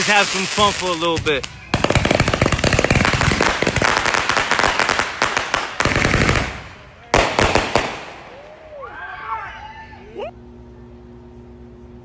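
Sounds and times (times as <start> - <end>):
firecrackers cracking: 0.0 - 8.5.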